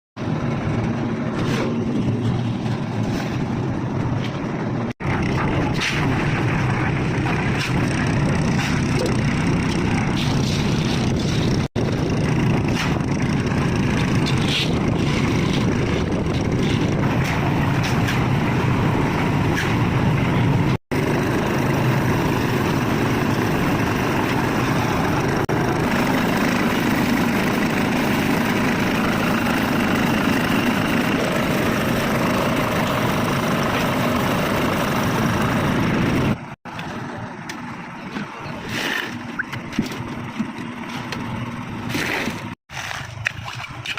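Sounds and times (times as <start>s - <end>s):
construction machinery droning: 0.2s - 43.1s.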